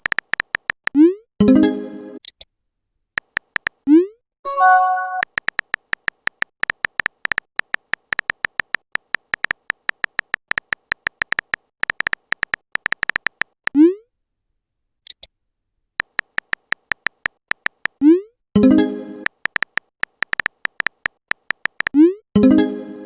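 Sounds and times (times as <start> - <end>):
typing clicks: 0.0 - 1.0, 3.2 - 3.8, 4.7 - 13.8, 16.0 - 18.0, 19.2 - 22.0
brief chime: 4.5 - 5.2.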